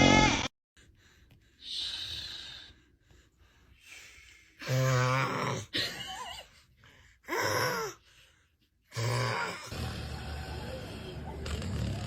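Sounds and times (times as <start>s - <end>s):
man snoring: 4.6s - 5.7s, 8.9s - 12.0s.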